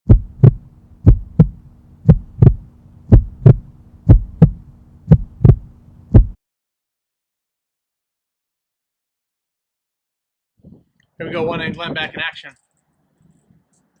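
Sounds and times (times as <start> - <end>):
heartbeat thumps: 0.0 - 6.4
low steady hum: 0.1 - 6.4.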